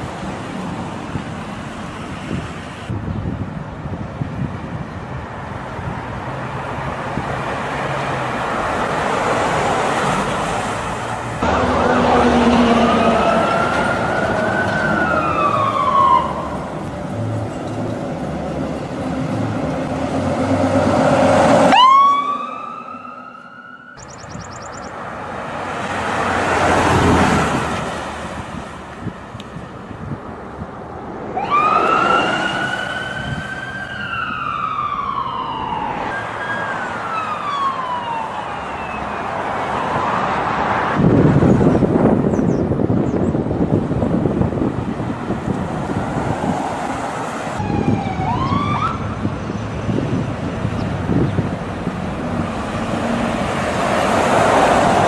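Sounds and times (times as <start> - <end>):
traffic noise: 0.0 - 55.0
ambulance siren wailing: 11.4 - 16.8, 20.2 - 24.8, 31.3 - 40.2, 47.6 - 49.3.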